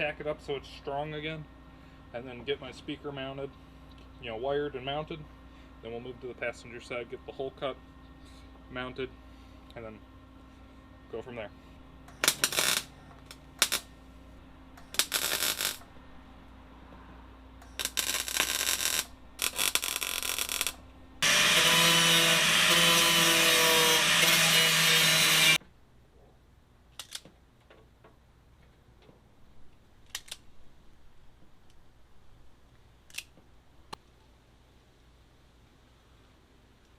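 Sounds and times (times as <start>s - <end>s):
power tool buzzing on sheet metal: 12.2s - 12.9s, 13.6s - 13.9s, 14.9s - 15.9s, 17.6s - 25.6s.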